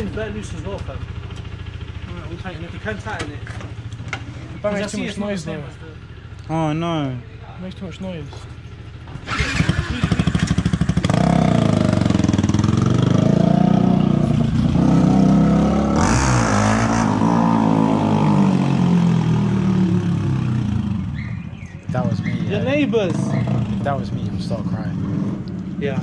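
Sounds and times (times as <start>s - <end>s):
loud motorcycle revving: 9.1s - 26.0s.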